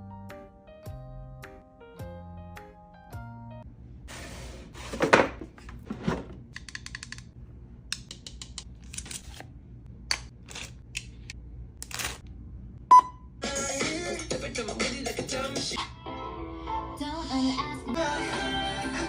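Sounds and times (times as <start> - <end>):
low steady hum: 3.6 - 13.4.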